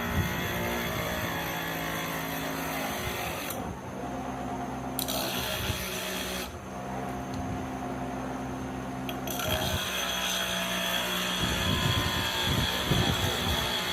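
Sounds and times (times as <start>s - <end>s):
electric power tool running: 0.0s - 3.7s, 5.0s - 6.6s, 9.1s - 13.9s.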